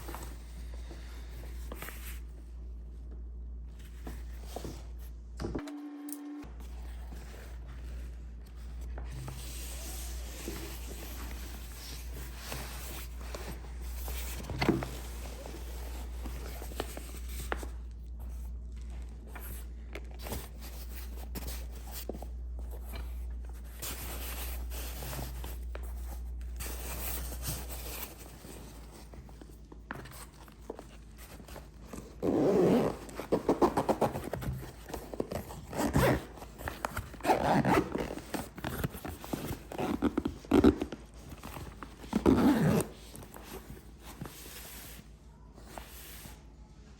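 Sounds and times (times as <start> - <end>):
zipper rasps: 32.2 - 34.3, 35.7 - 36.4, 37.1 - 38.9, 42.1 - 43.0.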